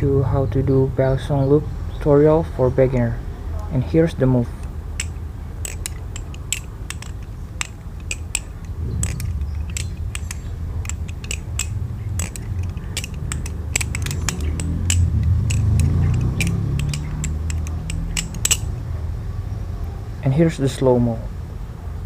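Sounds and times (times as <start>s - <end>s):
butterfly knife clacking: 4.5s - 18.8s.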